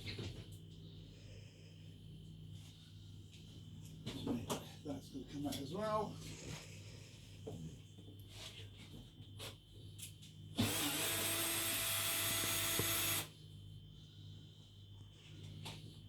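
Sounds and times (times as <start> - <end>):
power drill running: 10.6 - 13.3.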